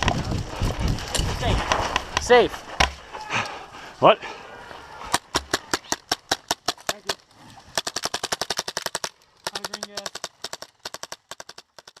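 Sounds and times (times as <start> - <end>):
airsoft guns firing bursts: 5.1 - 12.0.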